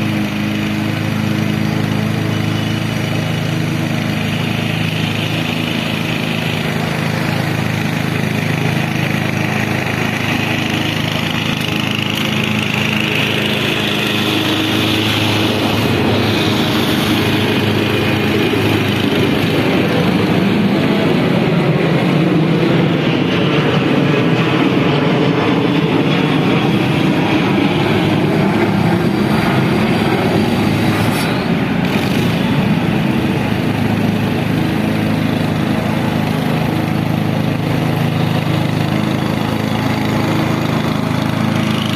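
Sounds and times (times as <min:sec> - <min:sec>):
lawn mower engine running: 0:00.0 - 0:41.9.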